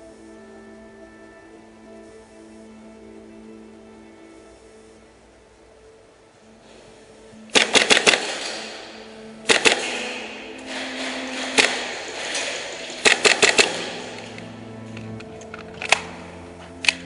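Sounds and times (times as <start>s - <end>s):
faint background music: 0.0s - 17.0s
airsoft guns firing: 7.5s - 14.4s.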